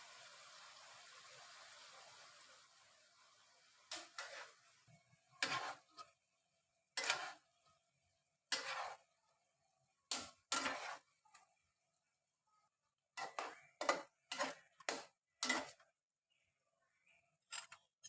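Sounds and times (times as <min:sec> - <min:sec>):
kitchen utensil short sharp strokes: 0:03.9 - 0:04.6, 0:05.4 - 0:06.1, 0:07.0 - 0:07.5, 0:08.5 - 0:09.1, 0:10.1 - 0:11.1, 0:13.2 - 0:15.8.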